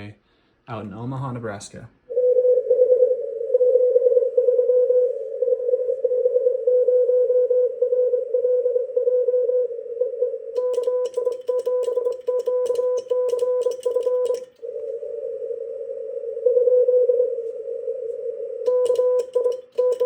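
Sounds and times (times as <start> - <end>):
mechanical morse key clicks: 10.6 - 14.6, 18.7 - 20.0
morse code tone: 10.6 - 15.0, 18.7 - 20.0.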